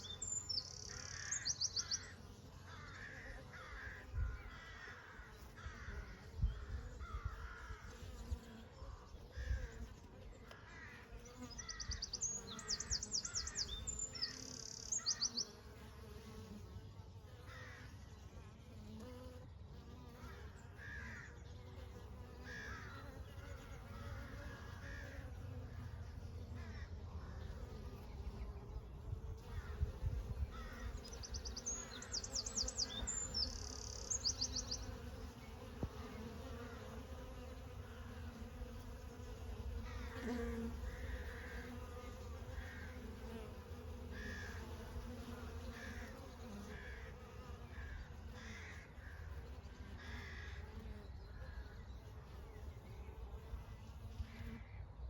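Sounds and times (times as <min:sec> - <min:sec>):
birds calling: 0:00.0 - 0:08.4, 0:10.5 - 0:15.6, 0:29.4 - 0:37.5
bees buzzing: 0:00.0 - 0:54.7.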